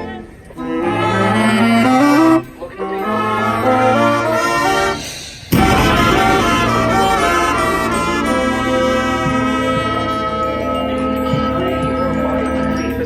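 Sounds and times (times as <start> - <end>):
brass band playing: 3.1 - 12.0
sustained horn notes: 3.1 - 12.4.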